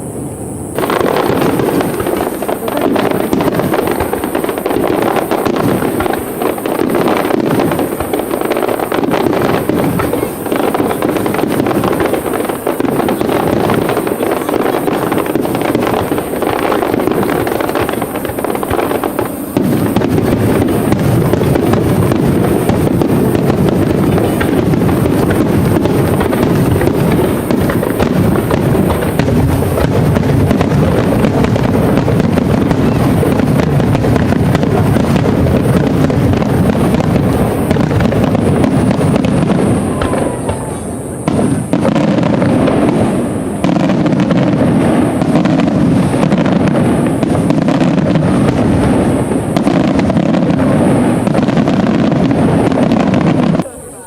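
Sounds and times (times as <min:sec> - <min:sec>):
fireworks booming and crackling: 0:00.0 - 0:54.0.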